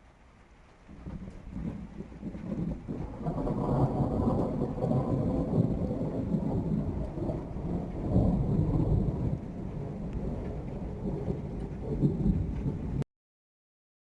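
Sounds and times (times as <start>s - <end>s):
thunder rumbling: 0.8s - 13.0s.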